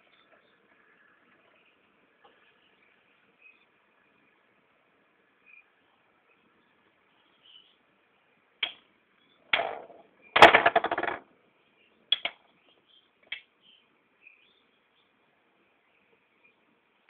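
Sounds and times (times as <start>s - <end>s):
spinning tops clattering: 9.6s - 11.2s.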